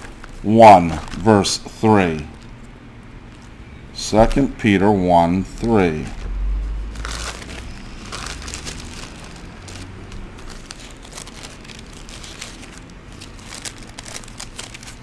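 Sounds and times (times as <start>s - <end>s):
thin paper pages rustling: 0.0s - 1.3s, 6.2s - 15.0s.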